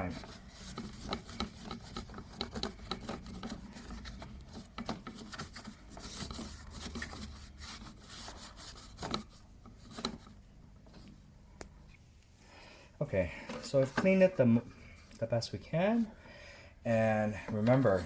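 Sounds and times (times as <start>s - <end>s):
scraping and rubbing: 0.0s - 11.2s, 17.0s - 18.0s.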